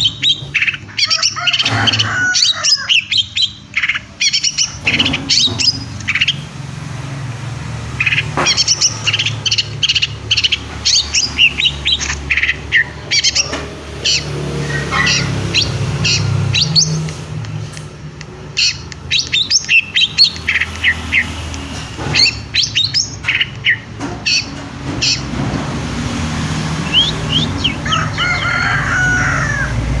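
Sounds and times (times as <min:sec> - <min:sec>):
bird chirping and whistling: 0:00.0 - 0:06.5, 0:08.0 - 0:17.1, 0:18.6 - 0:21.4, 0:22.1 - 0:25.3, 0:26.8 - 0:28.4.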